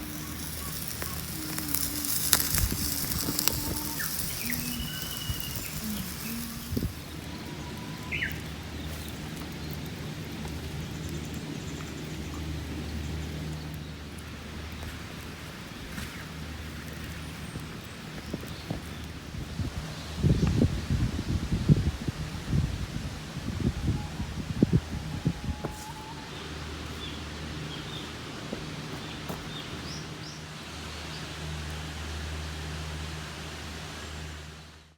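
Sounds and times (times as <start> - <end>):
falling bird chirp: 0.0 - 9.1
faint crackling: 0.0 - 19.2
small birds chirping: 0.0 - 19.3.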